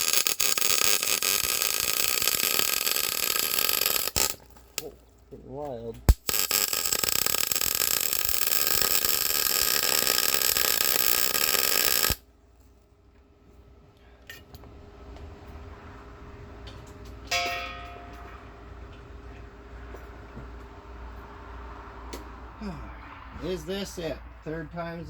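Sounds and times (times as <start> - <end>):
welder arc crackling: 0.0 - 5.1, 6.0 - 12.2
metal struck and ringing: 17.3 - 18.8.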